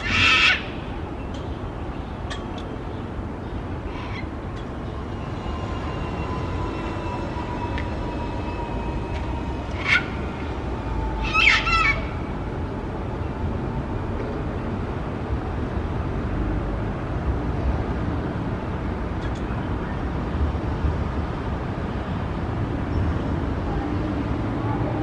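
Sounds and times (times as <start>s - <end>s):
cockatoo calls: 0.0s - 0.7s, 9.7s - 10.6s, 11.2s - 12.2s
city traffic hum: 0.0s - 25.0s.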